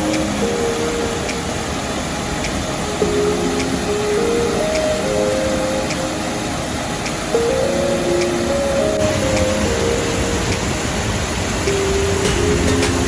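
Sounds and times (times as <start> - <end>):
simple background music melody: 0.0 - 13.0
steady rushing noise: 0.0 - 13.0.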